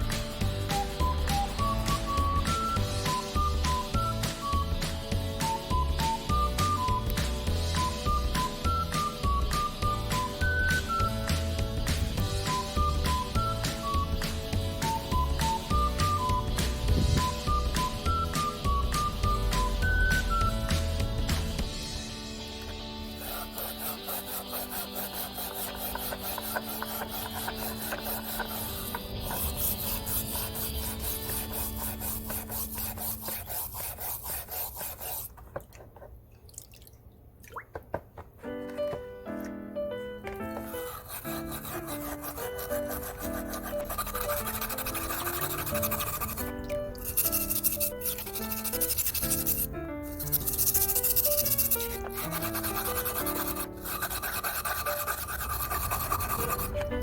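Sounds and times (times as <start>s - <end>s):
background music with simple melody: 0.0s - 33.5s, 38.4s - 57.0s
scrubbing metal wrench by hand: 22.6s - 36.1s, 40.5s - 57.0s
rubbing strokes polishing metal: 23.1s - 35.5s, 40.6s - 57.0s.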